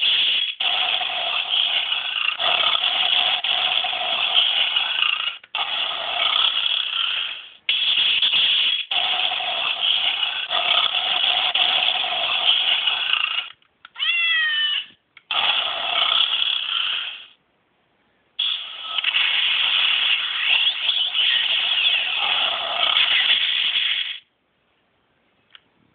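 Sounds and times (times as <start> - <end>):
electronic lion roars from toy: 0.0 - 8.1, 8.8 - 13.5, 15.3 - 17.3, 18.4 - 24.0.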